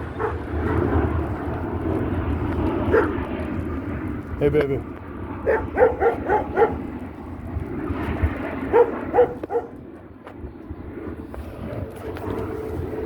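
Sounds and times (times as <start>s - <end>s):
passing vehicle engine hum: 0.0s - 4.0s
dog barking: 0.2s - 0.9s, 2.9s - 3.2s, 5.4s - 6.8s, 8.7s - 9.8s.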